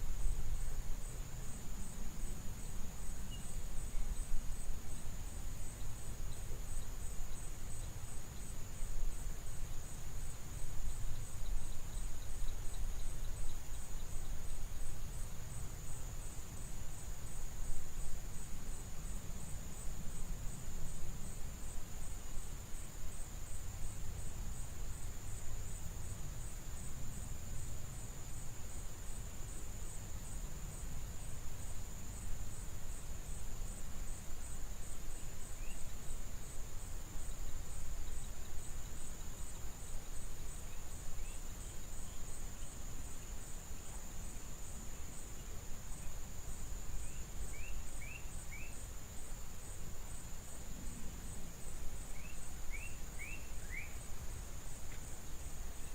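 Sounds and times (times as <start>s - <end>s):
insects chirring: 0.0s - 55.9s
bird chirps: 52.2s - 54.0s.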